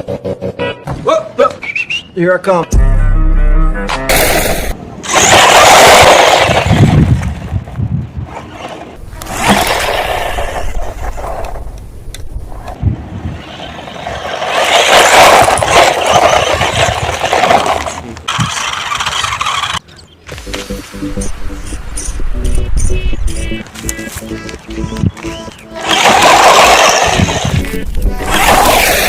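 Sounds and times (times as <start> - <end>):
toy car motor scraping rush: 4.2 - 7.2, 8.3 - 11.6, 12.6 - 19.8, 25.7 - 29.0.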